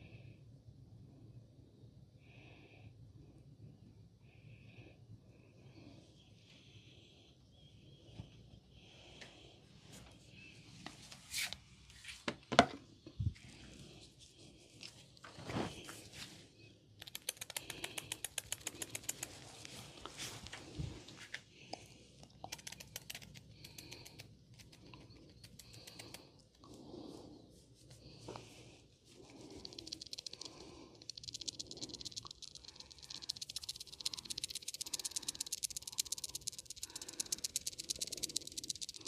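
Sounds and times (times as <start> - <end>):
oiled hands rubbing skin: 17.1 - 21.4, 22.5 - 39.0.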